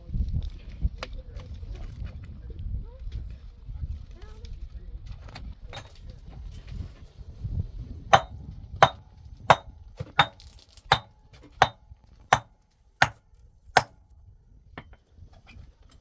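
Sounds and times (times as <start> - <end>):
hand tool striking: 5.8 - 6.0, 8.1 - 13.2, 13.8 - 14.0.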